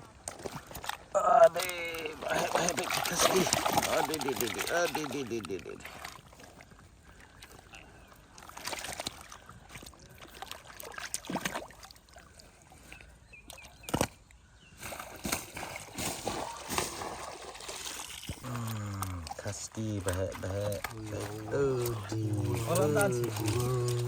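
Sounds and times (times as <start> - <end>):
water sloshing and splashing: 0.0 - 24.0
sharp splash or knock: 14.8 - 18.5.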